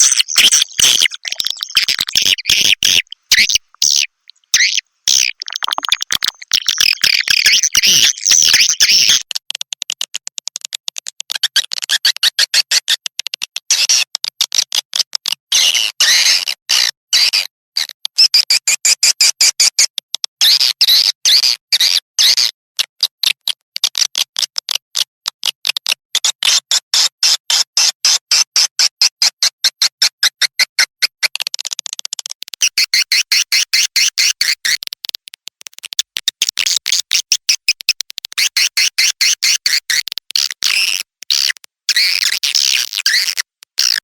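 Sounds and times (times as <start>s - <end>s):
swiftlets chirping rapidly: 0.0s - 9.2s, 36.5s - 44.0s.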